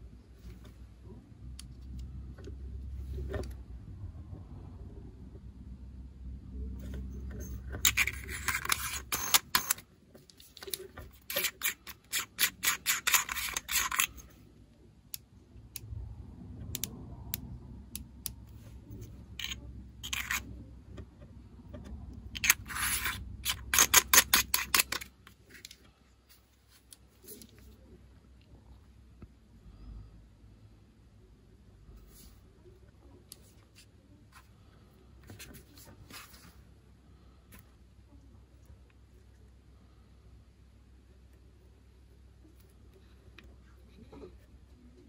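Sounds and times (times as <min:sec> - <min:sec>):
scope scraping and clicking: 0:06.8 - 0:14.4, 0:16.6 - 0:25.9.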